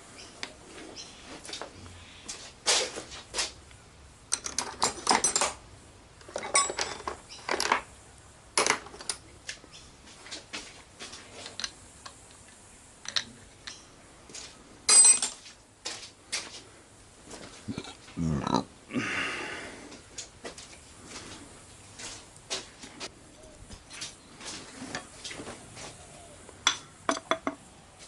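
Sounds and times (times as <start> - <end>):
metal tools clinking and clattering: 4.3 - 5.6, 6.3 - 7.8, 14.9 - 15.5.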